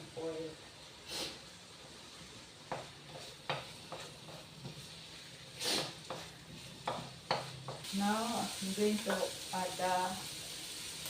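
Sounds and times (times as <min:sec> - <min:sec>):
onion sizzling in hot oil: 0:02.7 - 0:11.0.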